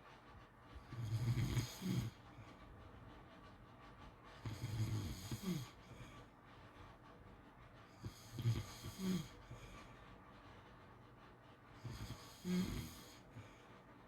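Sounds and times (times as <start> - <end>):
dog snoring: 0.8 - 2.2, 4.4 - 6.2, 8.0 - 9.8, 11.8 - 13.6.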